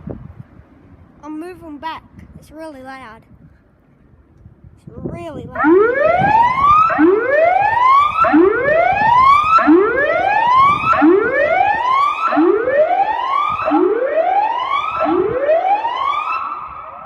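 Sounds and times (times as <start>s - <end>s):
rising whoop warning siren: 5.6s - 17.0s.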